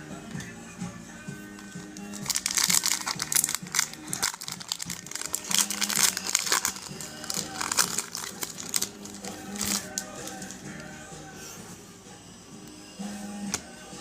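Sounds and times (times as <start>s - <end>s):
background music: 0.0s - 14.0s
foil wrapper tearing and crinkling: 2.0s - 10.6s.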